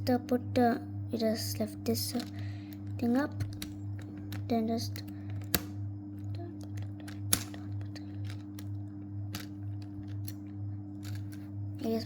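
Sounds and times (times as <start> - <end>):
steady low hum: 0.0 - 12.0
plastic puzzle cube pieces clicking: 6.3 - 8.7.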